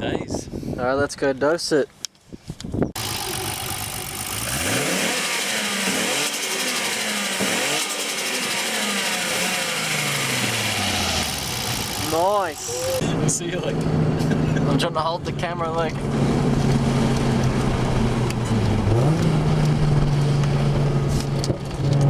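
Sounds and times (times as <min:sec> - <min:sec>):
turbo flutter: 0:03.0 - 0:13.0
car engine revving: 0:03.0 - 0:22.0.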